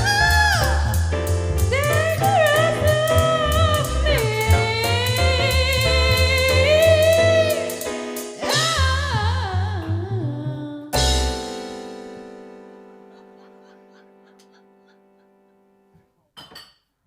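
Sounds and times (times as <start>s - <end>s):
beat and bass: 0.0s - 11.8s.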